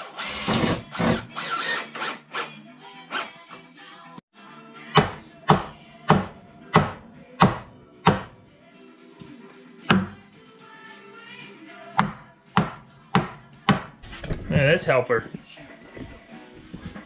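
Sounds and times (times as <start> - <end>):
background music: 0.0 - 17.0
hammer strikes: 5.0 - 8.3, 9.9 - 10.2, 12.0 - 13.9.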